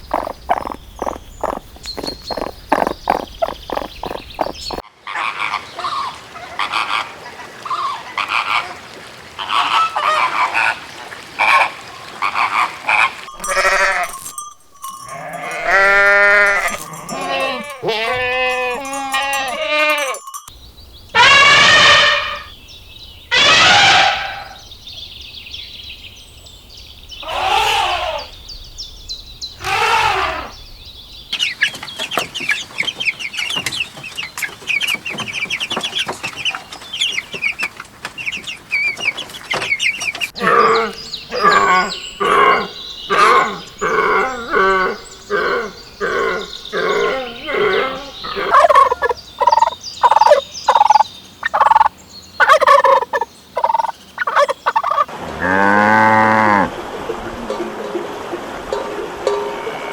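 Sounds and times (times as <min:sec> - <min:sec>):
poultry calling: 0:00.0 - 0:07.0, 0:12.2 - 0:20.4, 0:21.1 - 0:22.5, 0:23.3 - 0:24.6, 0:27.2 - 0:28.4, 0:29.6 - 0:30.5, 0:31.4 - 0:56.7.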